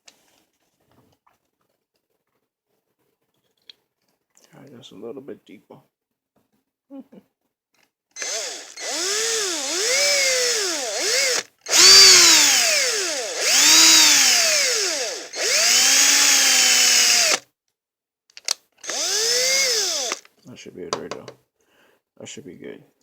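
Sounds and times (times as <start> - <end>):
power drill drilling into metal: 8.2 - 17.4, 18.8 - 20.3.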